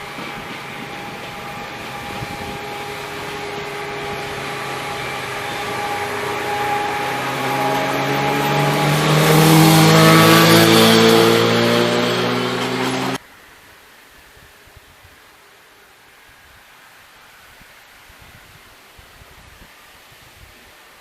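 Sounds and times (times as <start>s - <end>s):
diesel train approaching: 0.0s - 13.2s.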